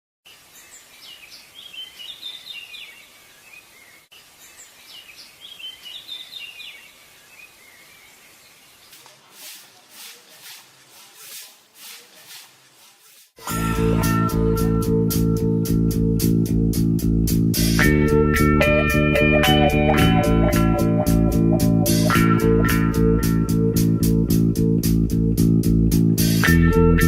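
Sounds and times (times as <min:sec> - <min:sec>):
songbird twittering chirps: 0:00.3 - 0:11.0
faint steady rush: 0:08.8 - 0:13.5.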